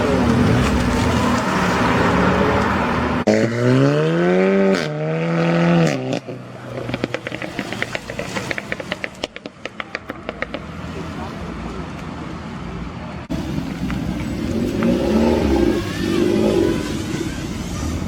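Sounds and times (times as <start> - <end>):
road noise: 0.0 - 18.0
car engine revving: 13.3 - 18.0.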